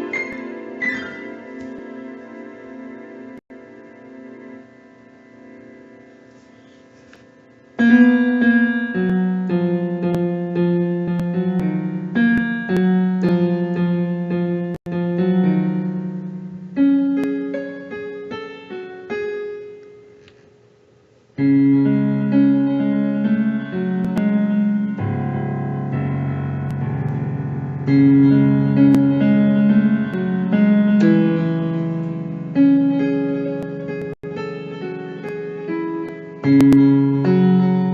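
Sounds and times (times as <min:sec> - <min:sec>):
keyboard playing piano melody: 0:00.0 - 0:20.2, 0:21.4 - 0:37.9.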